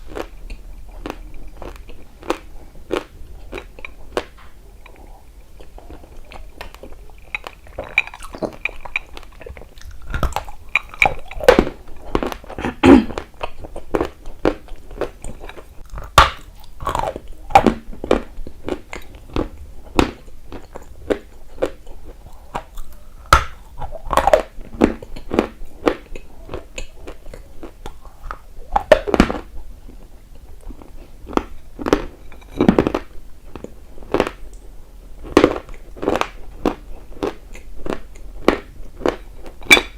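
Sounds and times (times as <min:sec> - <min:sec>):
crunchy biting and chewing: 0:00.0 - 0:34.6, 0:35.2 - 0:39.9.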